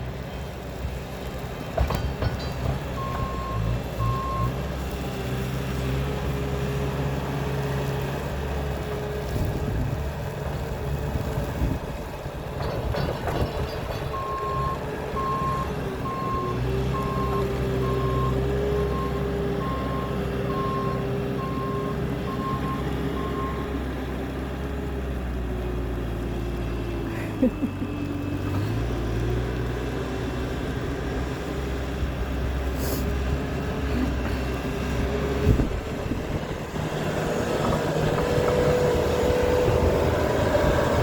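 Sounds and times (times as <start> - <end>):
truck engine rumble: 0.0 - 41.0
truck reversing alarm beeping: 1.8 - 4.7, 13.0 - 24.0.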